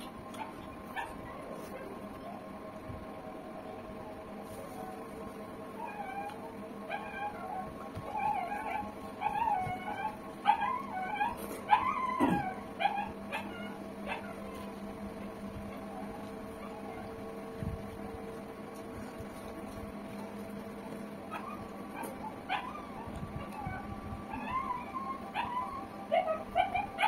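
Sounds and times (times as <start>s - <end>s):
steady background hum: 0.0s - 27.0s
small pet animal whining: 3.7s - 17.8s, 20.2s - 27.0s.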